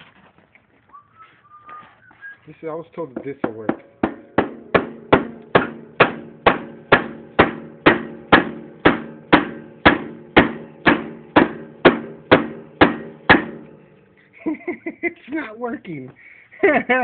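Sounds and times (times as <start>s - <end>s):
mallet blows with metallic ring: 3.3s - 14.0s.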